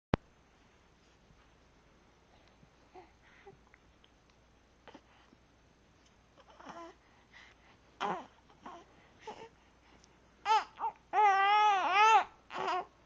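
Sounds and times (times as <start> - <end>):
baby whimpering and crying: 6.4 - 7.0, 8.0 - 9.5, 10.4 - 13.0.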